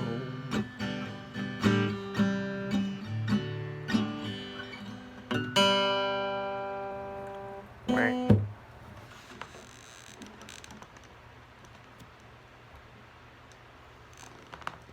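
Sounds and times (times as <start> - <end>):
acoustic guitar strumming: 0.0 - 8.6.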